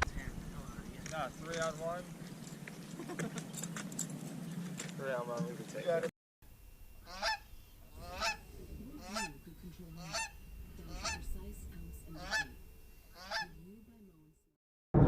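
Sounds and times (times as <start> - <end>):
lower wavering calls: 6.5 - 14.1
goose honking: 7.0 - 13.8.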